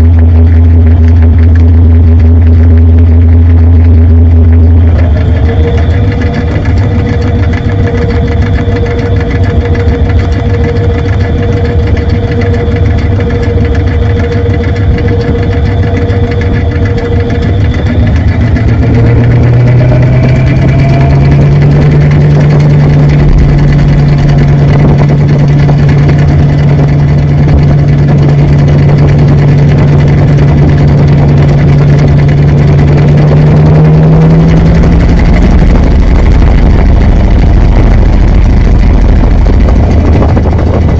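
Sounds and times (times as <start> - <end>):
washing machine motor hum: 0.0 - 40.9.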